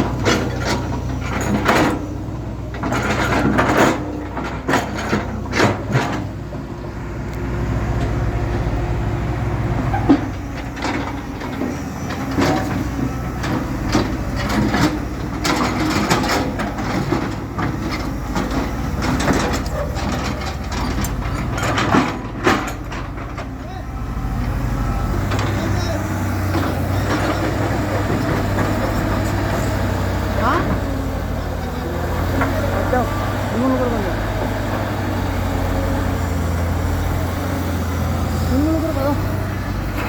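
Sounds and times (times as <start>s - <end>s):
machine clanks and knocks: 0.0s - 6.4s, 9.9s - 23.7s, 25.2s - 34.9s
diesel engine running: 0.0s - 40.0s.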